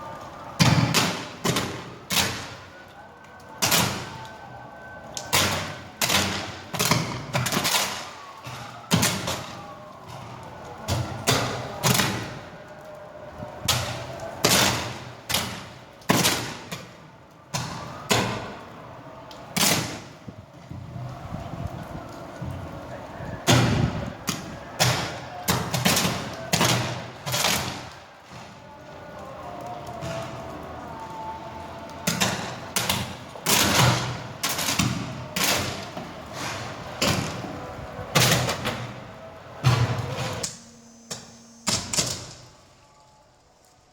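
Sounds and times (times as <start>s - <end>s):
electric arcs banging: 39.6s - 42.5s.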